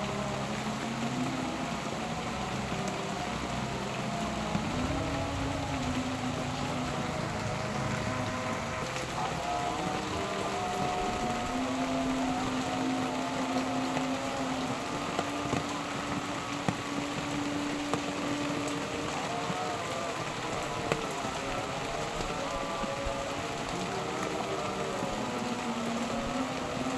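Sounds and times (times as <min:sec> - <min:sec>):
steady rain falling: 0:00.0 - 0:26.9
droning hum: 0:01.3 - 0:14.8.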